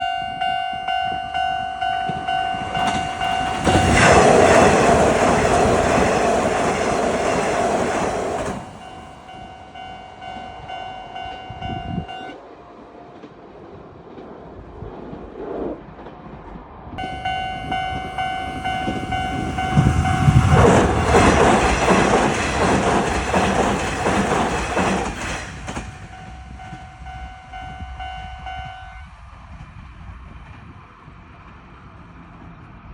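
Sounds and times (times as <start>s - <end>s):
level-crossing warning bells clanging: 0.0s - 12.4s, 17.0s - 29.2s
train rushing past: 0.0s - 32.9s.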